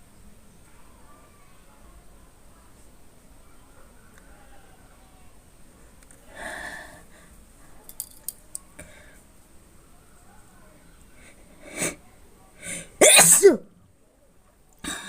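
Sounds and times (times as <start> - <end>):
sharp in-breaths: 11.2 - 12.0, 12.6 - 13.0
person sniffing: 11.3 - 12.0, 12.6 - 13.0.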